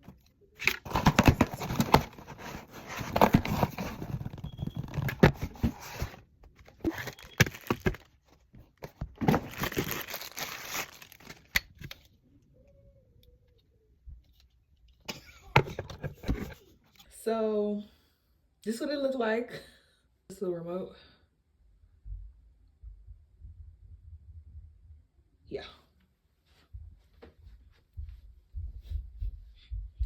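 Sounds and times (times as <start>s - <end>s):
packaging tearing and crinkling: 0.6s - 6.0s, 6.7s - 8.2s, 9.2s - 11.9s.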